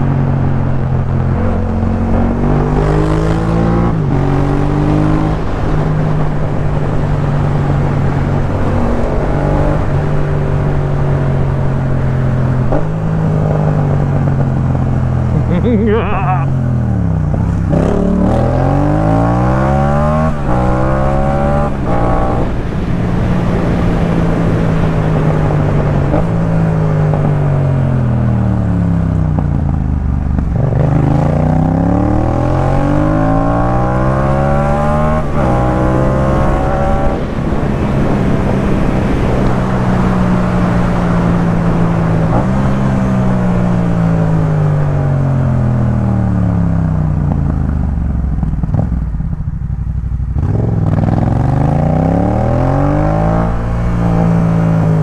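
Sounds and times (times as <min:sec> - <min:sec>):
motorcycle engine revving: 0:12.7 - 0:22.8, 0:23.4 - 0:44.3, 0:45.9 - 0:55.0.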